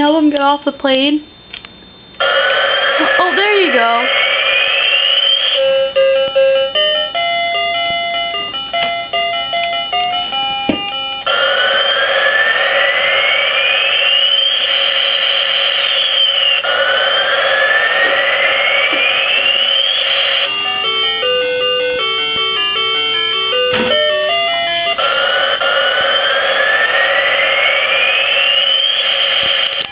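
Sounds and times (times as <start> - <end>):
long rising electronic tones: 2.2 - 6.0, 11.2 - 29.9.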